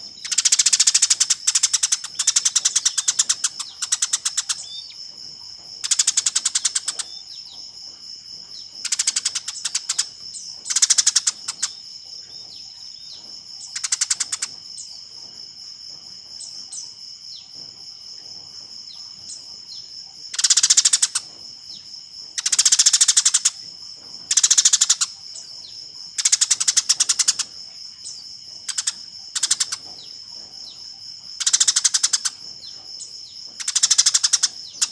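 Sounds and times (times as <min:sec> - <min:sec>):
sparrows chattering: 0:00.0 - 0:05.0, 0:05.8 - 0:07.6, 0:08.8 - 0:11.8, 0:12.6 - 0:15.0, 0:22.4 - 0:34.9.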